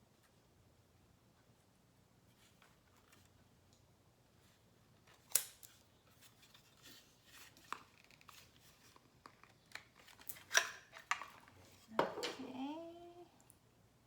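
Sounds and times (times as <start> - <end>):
plastic parts and packaging handled: 5.0 - 12.4.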